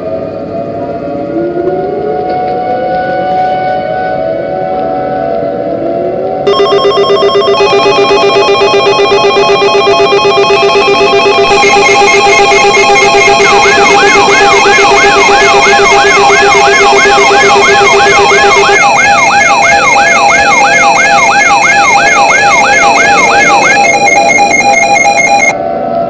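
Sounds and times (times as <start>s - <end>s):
siren-like yelp tone: 6.4s - 25.6s
steady and pulsing beeping tones: 6.5s - 25.6s.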